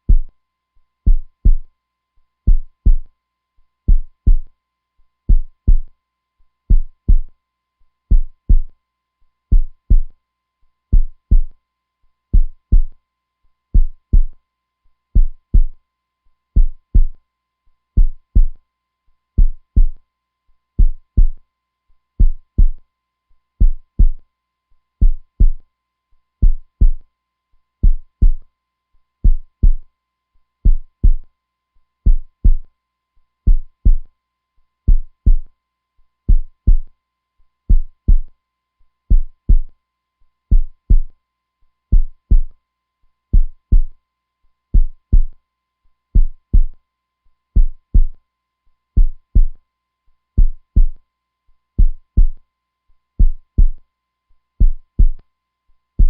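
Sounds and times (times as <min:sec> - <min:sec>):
heartbeat lub-dub: 0:00.0 - 0:00.4, 0:01.1 - 0:01.7, 0:02.5 - 0:03.1, 0:03.9 - 0:04.5, 0:05.3 - 0:05.9, 0:06.7 - 0:07.3, 0:08.1 - 0:08.8, 0:09.5 - 0:10.2, 0:10.9 - 0:11.6, 0:12.3 - 0:13.0, 0:13.8 - 0:14.4, 0:15.2 - 0:15.8, 0:16.6 - 0:17.2, 0:18.0 - 0:18.6, 0:19.4 - 0:20.0, 0:20.8 - 0:21.4, 0:22.2 - 0:22.8, 0:23.6 - 0:24.2, 0:25.0 - 0:25.6, 0:26.4 - 0:27.0, 0:27.8 - 0:28.5, 0:29.2 - 0:29.9, 0:30.6 - 0:31.3, 0:32.1 - 0:32.7, 0:33.5 - 0:34.1, 0:34.9 - 0:35.5, 0:36.3 - 0:36.9, 0:37.7 - 0:38.3, 0:39.1 - 0:39.7, 0:40.5 - 0:41.2, 0:41.9 - 0:42.5, 0:43.4 - 0:44.0, 0:44.8 - 0:45.4, 0:46.2 - 0:46.8, 0:47.6 - 0:48.2, 0:49.0 - 0:49.6, 0:50.4 - 0:51.0, 0:51.8 - 0:52.4, 0:53.2 - 0:53.8, 0:54.6 - 0:55.2.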